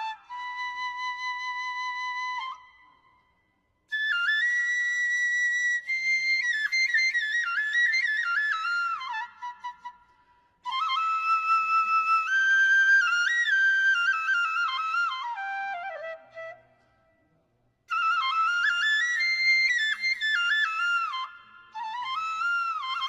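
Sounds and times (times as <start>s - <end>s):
solo flute melody: 0.0s - 3.2s, 3.9s - 16.8s, 17.9s - 23.0s.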